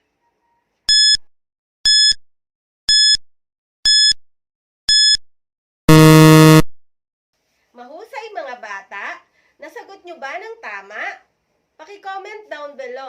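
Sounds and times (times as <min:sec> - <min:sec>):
countdown timer beeping: 0:00.9 - 0:01.2, 0:01.9 - 0:02.2, 0:02.9 - 0:03.2, 0:03.9 - 0:04.2, 0:04.9 - 0:05.2, 0:05.9 - 0:06.7.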